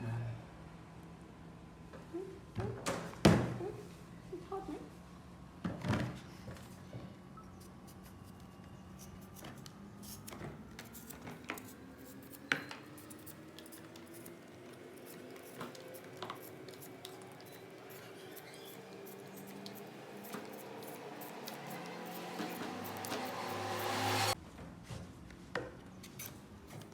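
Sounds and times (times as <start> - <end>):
utensils clicking and clinking: 12.3 - 24.4.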